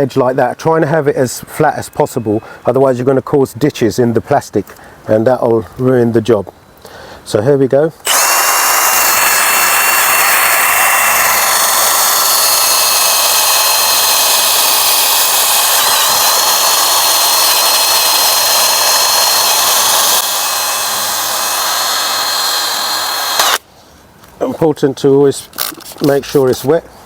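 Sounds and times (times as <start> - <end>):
power sander whine: 8.1 - 23.6.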